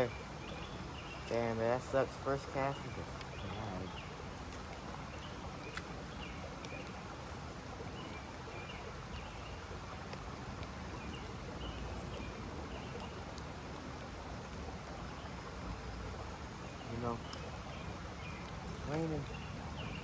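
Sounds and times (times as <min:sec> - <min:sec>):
light rain hiss: 0:00.0 - 0:20.0
small bird chirping: 0:16.6 - 0:20.0.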